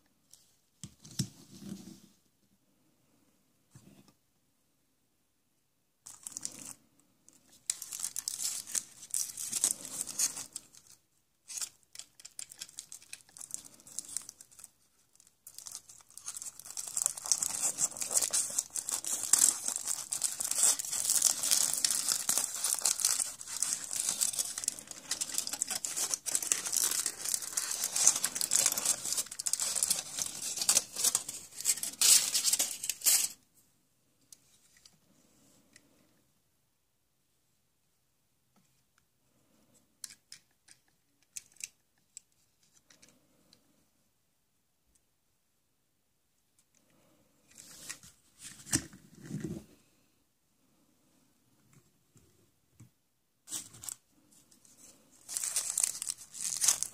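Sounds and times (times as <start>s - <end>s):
wrapper crinkling and tearing: 7.6s - 33.4s, 54.8s - 56.9s.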